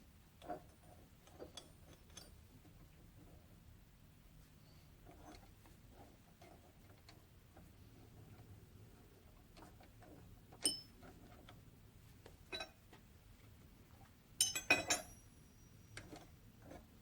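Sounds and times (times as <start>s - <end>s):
small metal parts clinking: 14.4s - 16.2s.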